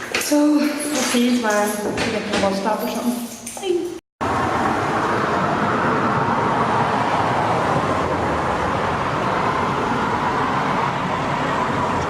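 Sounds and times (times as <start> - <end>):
road traffic noise: 3.4 - 12.0.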